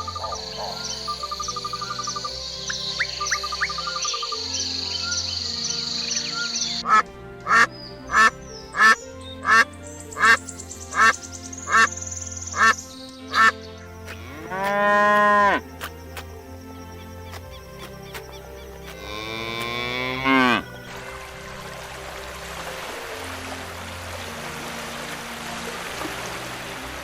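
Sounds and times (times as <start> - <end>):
insect trill: 0.0 - 6.9, 8.1 - 21.6
background music: 0.0 - 27.0
duck quacking: 6.8 - 9.6, 11.7 - 11.9, 13.4 - 13.6.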